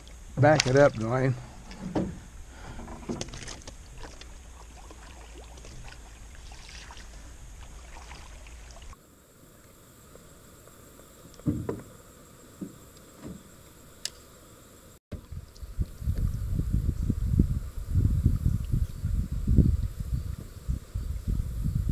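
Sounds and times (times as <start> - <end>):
boat engine rumble: 0.0 - 21.9
water hiss: 0.0 - 21.9
soft knocks: 1.8 - 2.2, 11.4 - 11.9.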